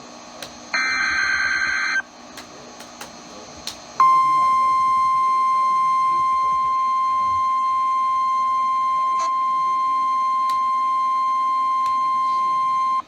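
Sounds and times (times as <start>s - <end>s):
steady high alarm beep: 0.8s - 2.0s, 4.0s - 13.0s.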